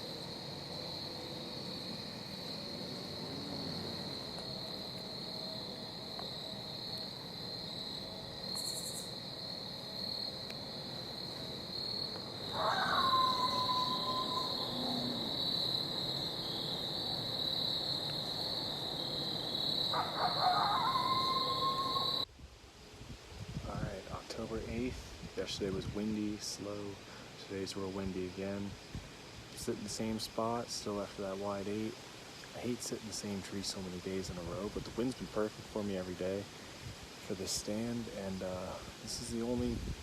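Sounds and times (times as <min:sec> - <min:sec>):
crickets chirping: 0:00.0 - 0:40.0
rough call into held whistle: 0:12.9 - 0:15.2.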